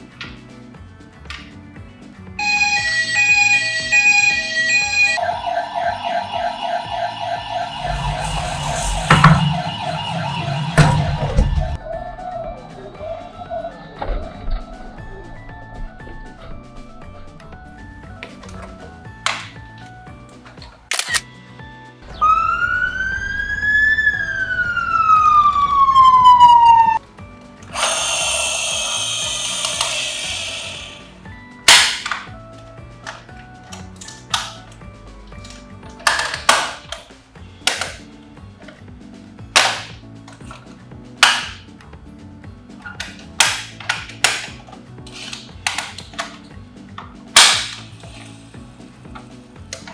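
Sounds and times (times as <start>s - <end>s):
toy electronic siren wailing: 2.4s - 11.8s, 24.7s - 27.0s, 27.7s - 31.1s
harsh noisy electronic sound: 5.2s - 11.8s
sharp hard clacks: 31.7s - 32.3s.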